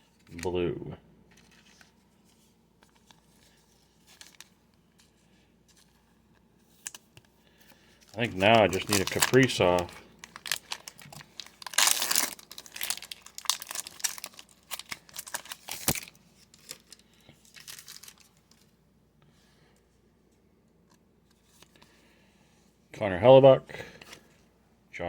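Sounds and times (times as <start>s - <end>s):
card pack wrapper crinkling: 1.3s - 2.0s, 2.8s - 4.6s, 6.7s - 18.7s
cards being handled: 1.3s - 18.7s.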